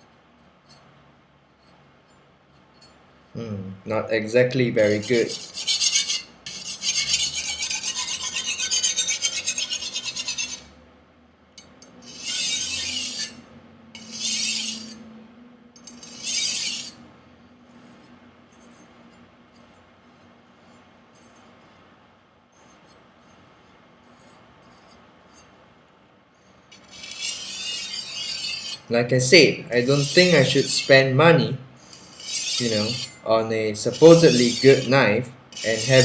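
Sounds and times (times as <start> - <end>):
knife scraping on sharpening stone: 4.8 - 10.7, 11.6 - 13.4, 14.0 - 15.0, 15.8 - 17.0, 26.7 - 28.9, 29.7 - 31.0, 31.9 - 33.3, 33.9 - 36.0.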